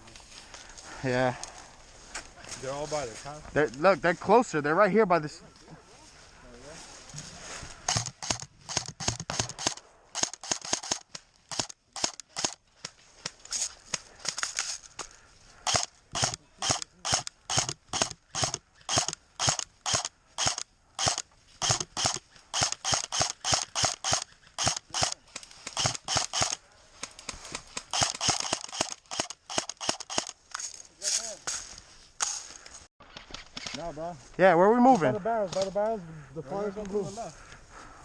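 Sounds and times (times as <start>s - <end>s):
airsoft gun firing single shots: 7.9s - 12.6s, 15.7s - 26.6s, 27.8s - 30.3s.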